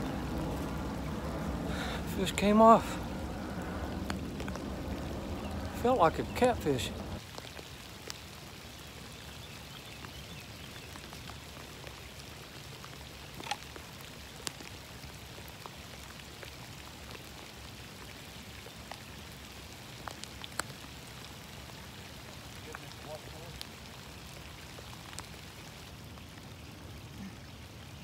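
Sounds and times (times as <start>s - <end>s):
single raindrops striking close: 0.0s - 8.3s, 12.8s - 26.6s
steady rain falling: 0.0s - 28.0s.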